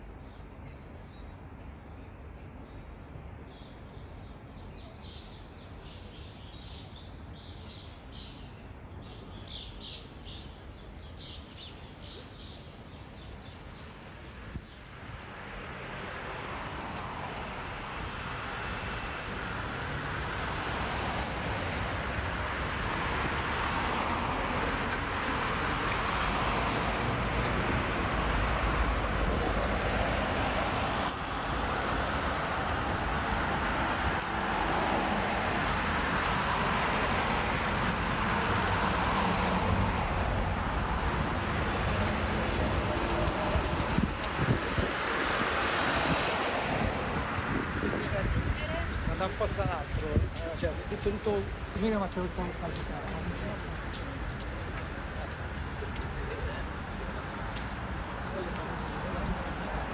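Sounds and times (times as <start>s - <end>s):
city traffic noise: 0.0s - 59.9s.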